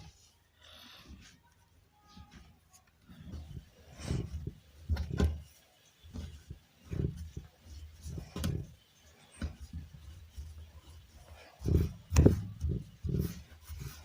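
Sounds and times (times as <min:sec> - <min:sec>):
dough thudding while kneaded: 0:03.1 - 0:14.0.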